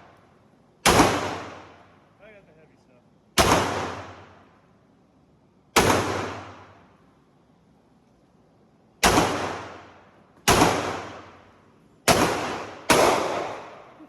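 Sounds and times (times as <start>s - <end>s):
pistol shots echoing: 0.8s - 1.9s, 3.4s - 4.4s, 5.7s - 6.9s, 9.0s - 14.0s.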